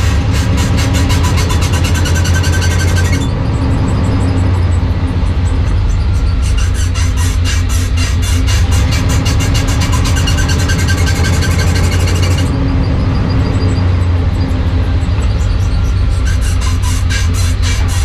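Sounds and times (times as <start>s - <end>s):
fast regular ticking: 0.0s - 18.0s
vehicle driving low drone: 0.0s - 18.0s.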